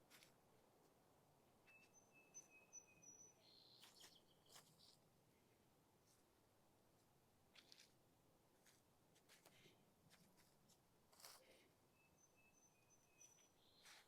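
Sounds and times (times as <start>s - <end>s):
faint whistled bird calls: 1.7s - 5.0s, 12.0s - 14.0s.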